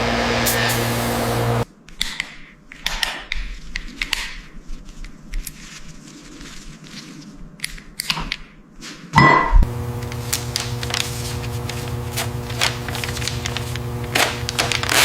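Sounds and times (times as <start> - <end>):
loud rasping burst: 0.0 - 1.6, 9.7 - 15.0.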